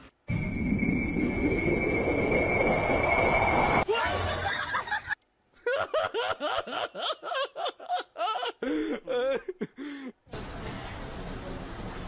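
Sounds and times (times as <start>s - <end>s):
person laughing: 3.9s - 10.1s.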